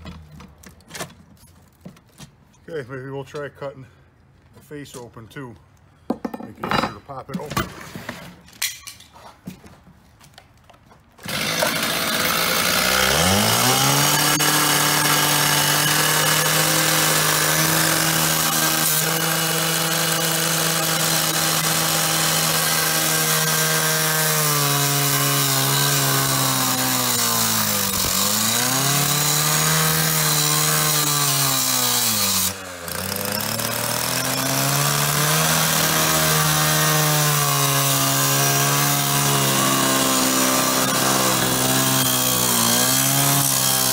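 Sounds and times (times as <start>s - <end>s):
power saw cutting metal: 11.2s - 43.9s.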